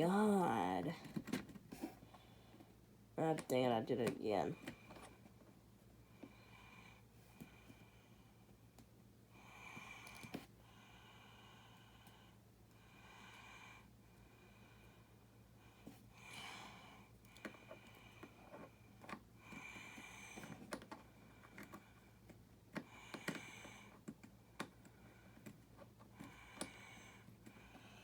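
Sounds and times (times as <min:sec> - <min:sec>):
soft breath: 0:01.7 - 0:02.9, 0:06.0 - 0:08.6, 0:09.3 - 0:24.1, 0:24.7 - 0:28.0.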